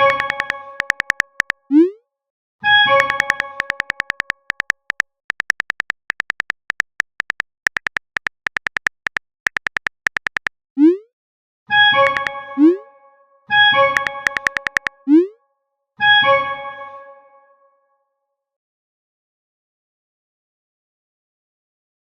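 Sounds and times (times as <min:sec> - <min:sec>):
keyboard tap clicks: 0:00.0 - 0:01.5, 0:03.0 - 0:10.5, 0:12.1 - 0:12.3, 0:14.0 - 0:14.9.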